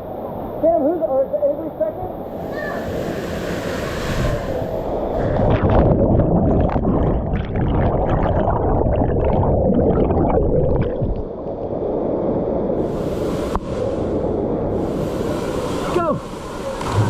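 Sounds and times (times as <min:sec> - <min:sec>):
muffled underwater rushing water: 0:02.0 - 0:17.0
bubbles crackling: 0:05.2 - 0:11.7.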